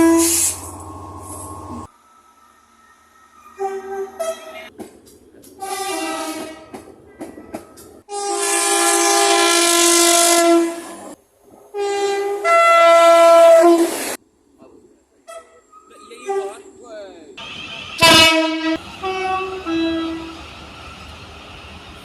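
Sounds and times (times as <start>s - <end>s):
train horn blasts: 0.0s - 0.7s, 3.6s - 4.7s, 5.6s - 6.8s, 8.1s - 13.9s, 17.4s - 20.4s.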